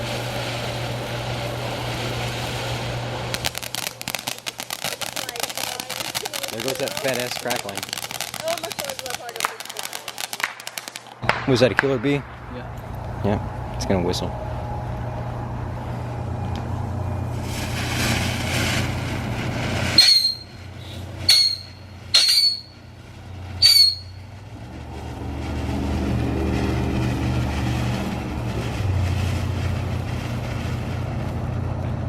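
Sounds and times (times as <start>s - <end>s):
firework whistles: 0.0s - 11.6s, 17.2s - 31.4s
steady low hum: 11.2s - 32.0s
brief hiss: 17.3s - 19.0s.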